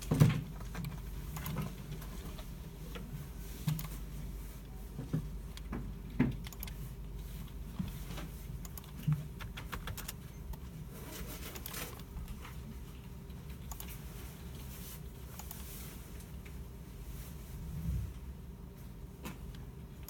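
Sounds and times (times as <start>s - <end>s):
keyboard typing: 0.0s - 3.0s, 3.6s - 4.0s, 5.2s - 15.8s
low hum of machines: 0.0s - 20.0s
mouse clicks: 6.3s - 6.8s.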